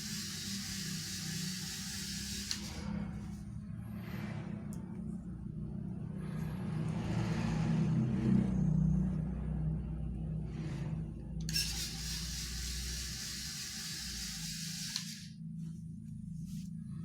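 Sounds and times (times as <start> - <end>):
toy robot motors humming: 0.0 - 3.0, 11.4 - 15.4.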